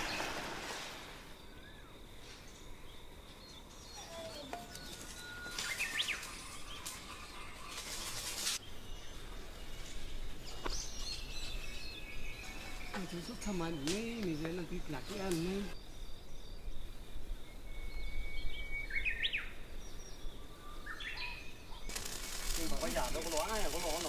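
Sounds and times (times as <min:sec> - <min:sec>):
outdoor ambience: 0:00.0 - 0:24.0
small birds chirping: 0:01.4 - 0:24.0
hissing noise: 0:21.9 - 0:24.0.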